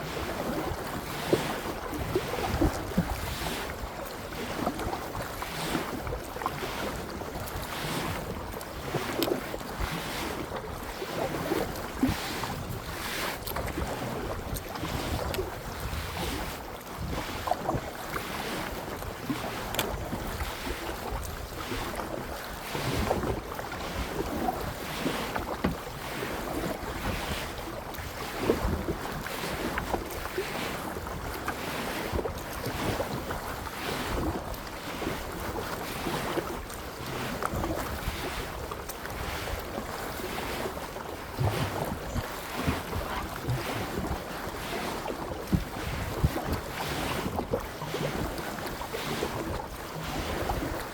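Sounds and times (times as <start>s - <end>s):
paddle strokes splashing in water: 0.0s - 50.9s
wind buffeting microphone: 1.6s - 6.4s, 10.3s - 18.1s, 41.2s - 44.2s, 45.4s - 48.4s.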